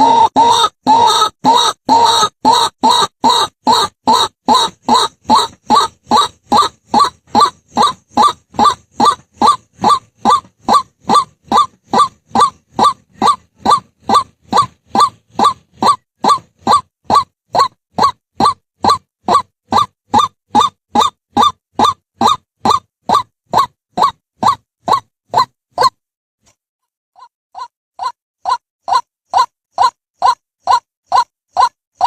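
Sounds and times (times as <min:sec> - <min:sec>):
bird calling harsh notes: 0:00.0 - 0:25.9.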